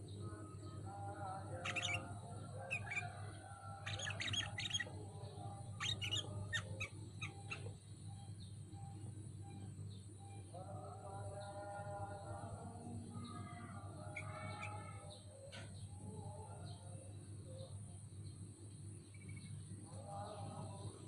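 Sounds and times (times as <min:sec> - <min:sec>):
bird chirping and whistling: 0:01.6 - 0:02.1, 0:03.9 - 0:04.9, 0:05.8 - 0:07.7.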